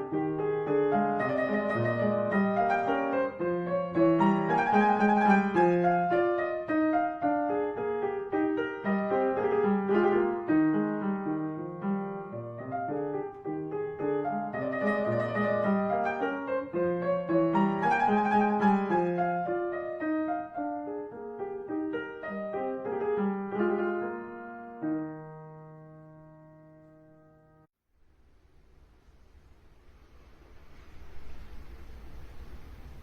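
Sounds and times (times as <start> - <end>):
piano background music: 0.0 - 27.7
faint hiss: 27.9 - 33.0.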